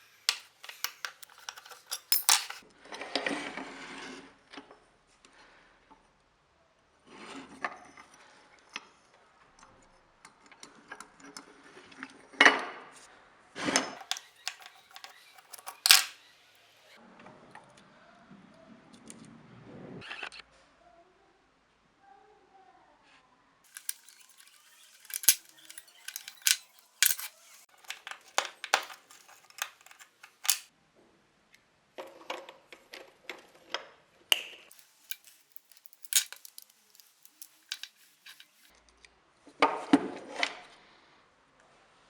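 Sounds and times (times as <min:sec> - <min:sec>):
metal parts and tools clinking: 0:00.0 - 0:02.6, 0:14.0 - 0:16.2, 0:23.7 - 0:30.7, 0:34.7 - 0:38.7
scraping rattle: 0:00.0 - 0:02.6, 0:14.0 - 0:16.2, 0:23.7 - 0:30.7, 0:34.7 - 0:38.7.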